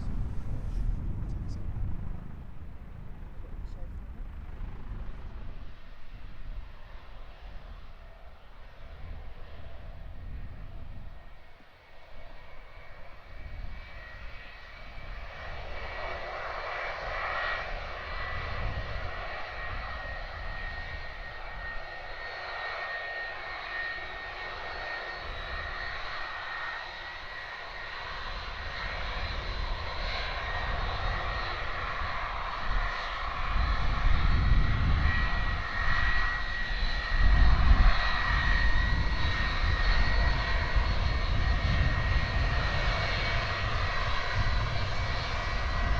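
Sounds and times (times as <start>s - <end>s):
deep rumble: 0.0s - 5.8s
jet engines whining and roaring: 0.0s - 45.9s.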